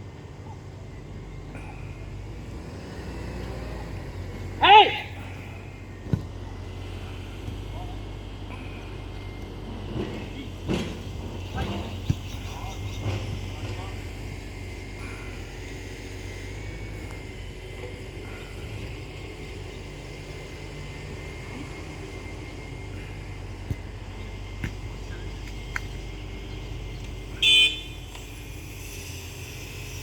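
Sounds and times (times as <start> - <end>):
outdoor background hum: 0.0 - 30.0.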